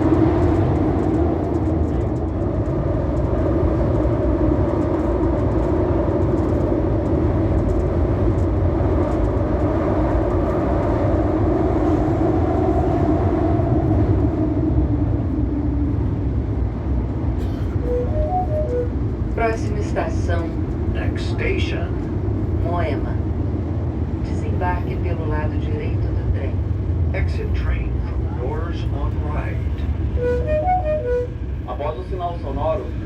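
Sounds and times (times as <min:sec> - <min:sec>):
metro train running noise: 0:00.0 - 0:33.0.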